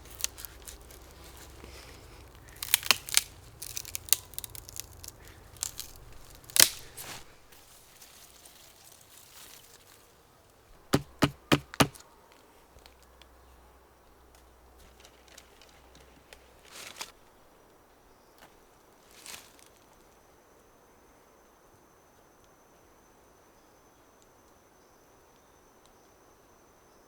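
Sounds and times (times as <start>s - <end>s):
sharp knocks: 10.9s - 12.0s.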